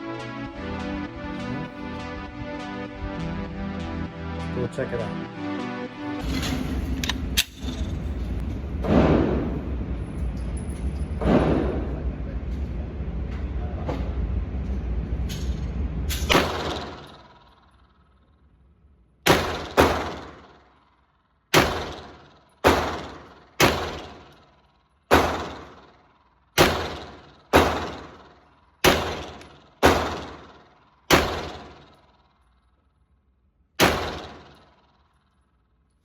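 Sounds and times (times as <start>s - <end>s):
pistol shots: 11.2s - 11.9s, 16.3s - 17.5s, 19.2s - 20.7s, 21.5s - 24.5s, 25.1s - 26.0s, 26.6s - 32.2s, 33.8s - 35.1s.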